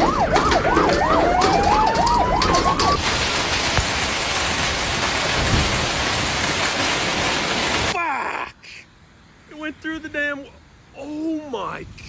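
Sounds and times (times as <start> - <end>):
electronic siren warbling: 0.0 - 3.0
hailstones clattering: 1.5 - 8.0
heavy hail and rain hiss: 2.9 - 8.8.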